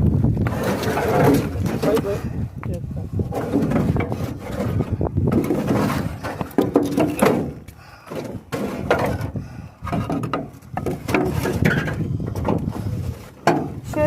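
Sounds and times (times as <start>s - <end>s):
objects knocking and clattering: 3.3s - 14.0s.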